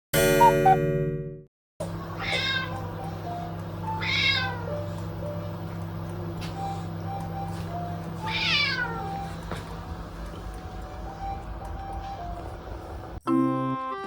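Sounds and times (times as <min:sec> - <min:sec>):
cat meowing: 0:02.2 - 0:02.9, 0:03.9 - 0:04.7, 0:08.2 - 0:09.2
soft background music: 0:02.4 - 0:14.0.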